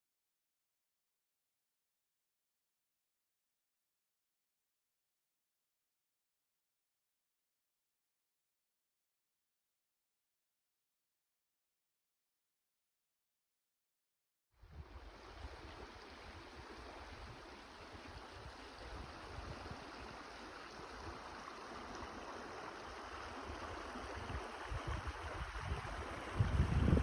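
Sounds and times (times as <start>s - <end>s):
wind on microphone: 24.1s - 27.0s.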